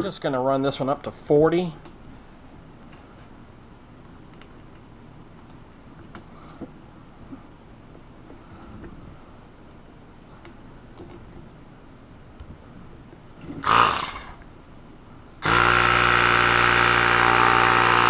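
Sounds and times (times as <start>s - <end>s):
air compressor running: 13.6s - 14.4s, 15.4s - 18.0s.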